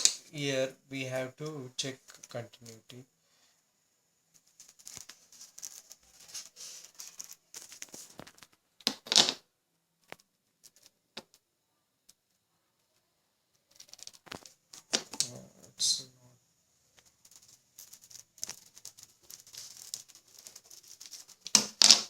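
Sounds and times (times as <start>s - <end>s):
hands rustling cable wires: 4.3s - 9.4s, 10.0s - 13.0s, 13.6s - 15.4s, 16.9s - 22.0s.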